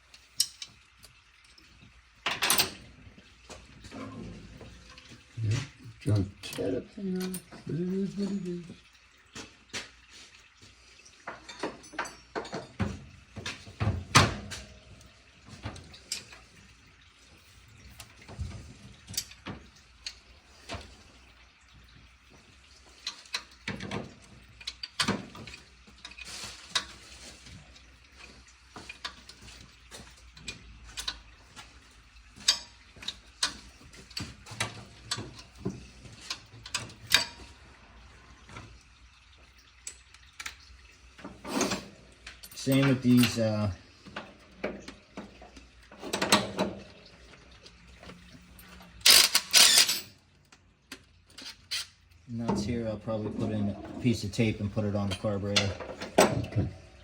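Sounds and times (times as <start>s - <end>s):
metal parts clinking and knocking: 2.3s - 2.8s, 48.8s - 50.2s.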